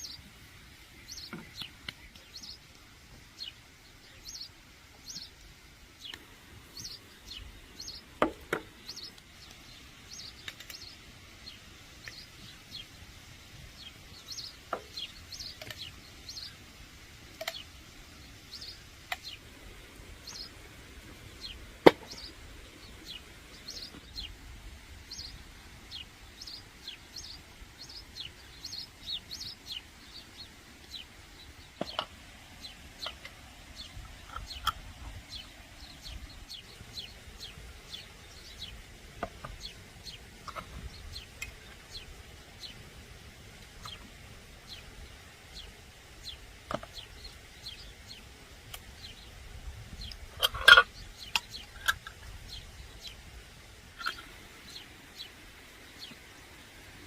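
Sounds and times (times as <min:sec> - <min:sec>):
small birds chirping: 0:00.0 - 0:57.0.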